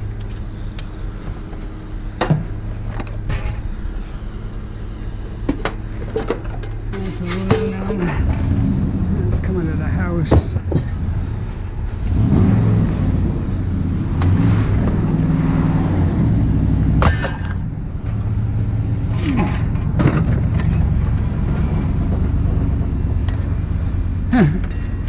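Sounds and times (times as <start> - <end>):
vehicle engine humming: 0.0 - 25.0
sharp metal clanks: 17.0 - 17.8, 24.4 - 25.0.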